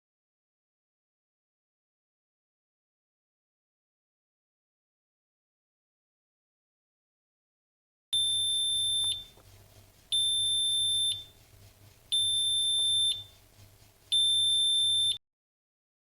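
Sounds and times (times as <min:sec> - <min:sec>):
timer alarm beeping: 0:08.2 - 0:09.4, 0:10.1 - 0:11.4, 0:12.1 - 0:13.4, 0:14.1 - 0:15.2.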